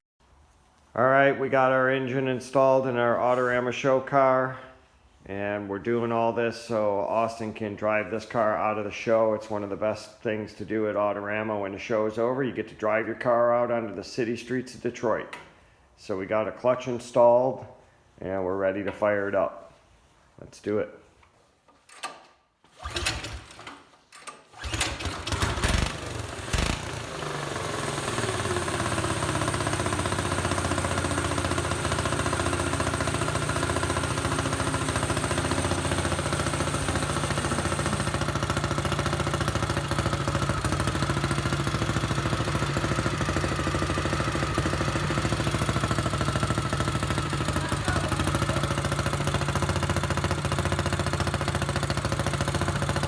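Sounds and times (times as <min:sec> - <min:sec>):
small engine starting and running: 0:22.7 - 0:53.0.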